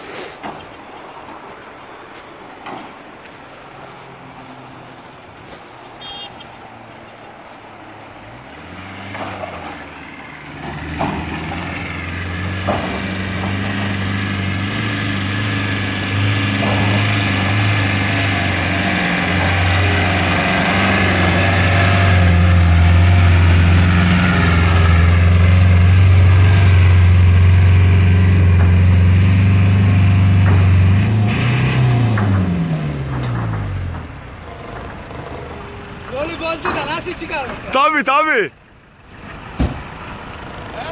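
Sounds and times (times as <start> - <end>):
engine straining at high revs: 8.6 - 33.6
knocks from vehicle: 39.6 - 39.9.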